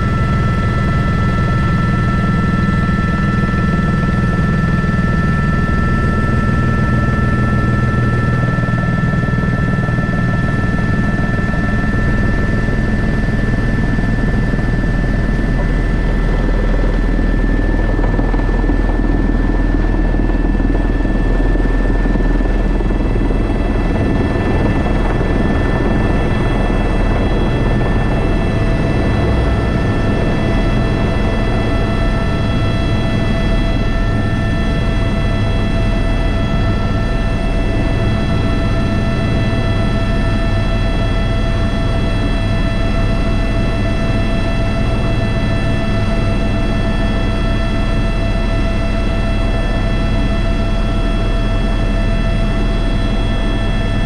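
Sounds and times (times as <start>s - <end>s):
helicopter rotor rumble: 0.0s - 54.0s
high turbine whines: 0.0s - 54.0s.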